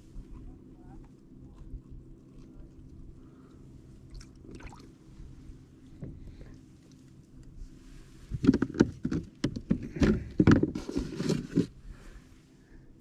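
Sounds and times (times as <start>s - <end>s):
knocks against kayak: 8.3s - 11.7s.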